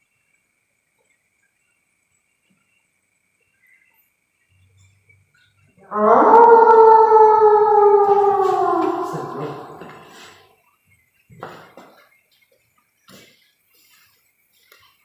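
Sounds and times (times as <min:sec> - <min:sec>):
loud falling wail: 0:05.8 - 0:10.4.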